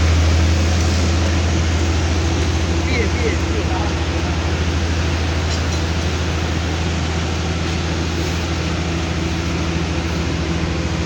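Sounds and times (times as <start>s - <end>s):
constant noisy hiss: 0.0s - 11.0s
diesel engines droning: 0.0s - 11.0s.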